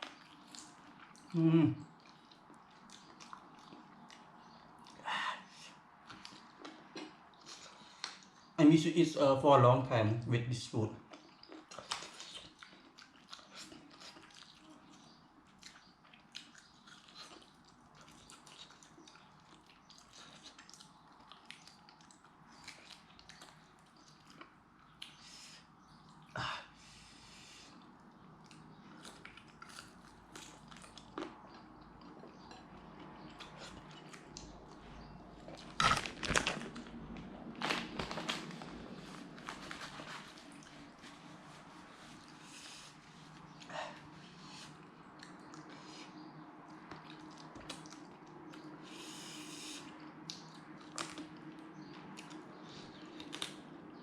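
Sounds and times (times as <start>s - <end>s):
person chewing and biting: 11.1s - 25.2s, 27.8s - 34.8s.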